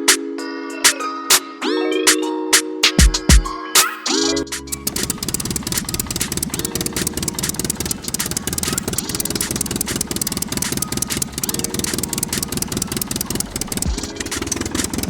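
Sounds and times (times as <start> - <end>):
small diesel engine knocking: 4.8 - 15.0.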